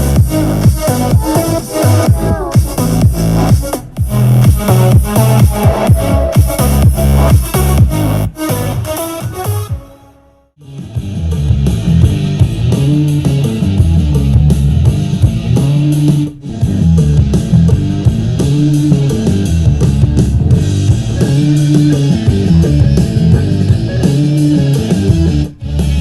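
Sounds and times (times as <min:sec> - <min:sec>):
instrumental rock music: 0:10.8 - 0:26.0.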